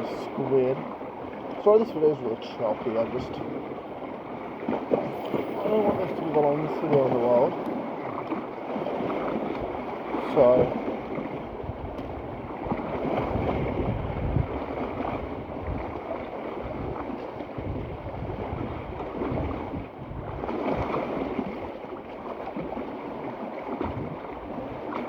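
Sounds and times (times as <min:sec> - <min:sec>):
waves washing: 0:00.0 - 0:25.0
wind gusting on microphone: 0:09.1 - 0:21.8, 0:23.8 - 0:24.6.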